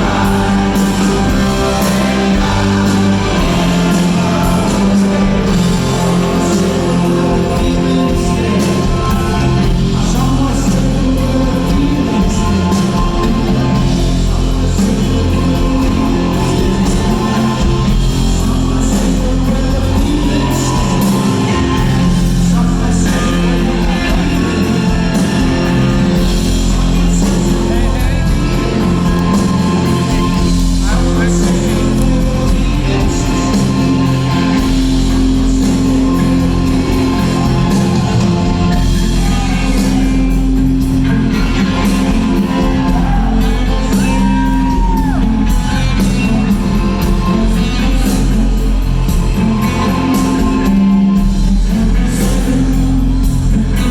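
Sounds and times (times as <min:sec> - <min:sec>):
bass and drums: 0:00.0 - 0:53.9
electric guitar long notes: 0:00.0 - 0:53.9.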